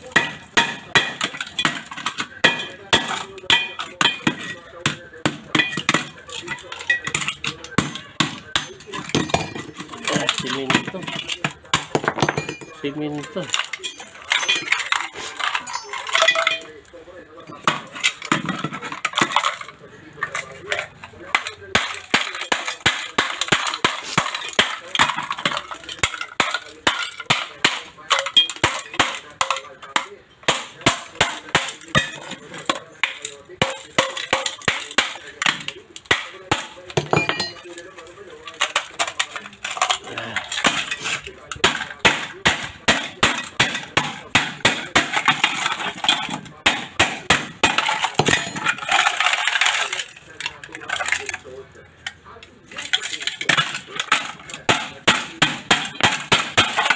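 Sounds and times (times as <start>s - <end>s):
hammer striking cement: 0.0s - 12.6s, 21.4s - 37.6s, 41.6s - 48.7s, 53.5s - 56.9s
broken pieces crunching: 0.0s - 56.9s
clinking and crumbling: 0.0s - 56.9s.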